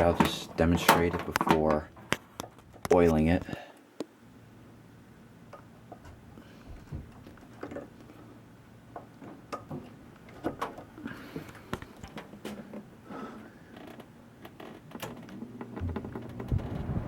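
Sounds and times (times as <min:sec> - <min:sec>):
clicks and knocks of handling: 0:00.0 - 0:04.1, 0:06.8 - 0:08.2, 0:08.9 - 0:12.9
faint steady hum: 0:00.0 - 0:17.0.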